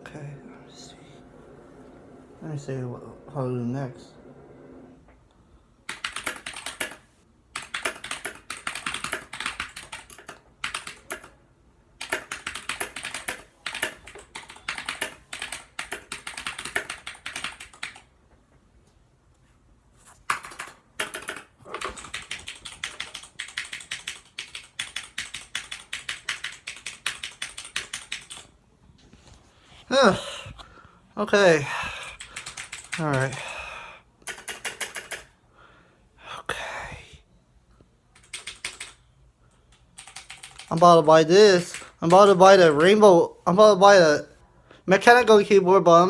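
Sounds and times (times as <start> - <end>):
mechanical keyboard typing: 5.9 - 11.4, 12.0 - 18.1, 20.3 - 28.5, 32.2 - 33.4, 34.2 - 35.3, 38.2 - 39.0, 39.7 - 43.0.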